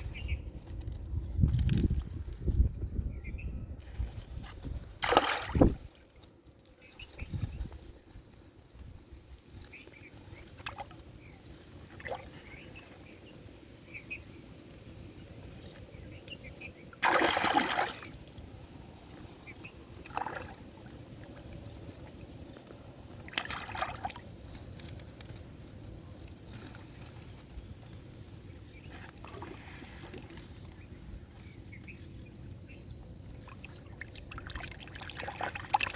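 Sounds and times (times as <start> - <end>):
water splashing: 5.0 - 6.0, 17.0 - 18.3, 20.0 - 21.0, 23.2 - 24.2, 33.3 - 35.9.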